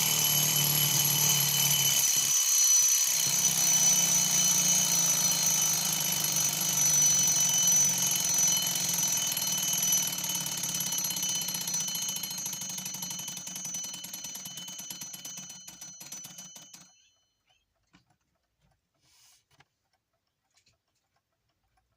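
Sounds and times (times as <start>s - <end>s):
alarm clock bell ringing: 0.0s - 17.5s.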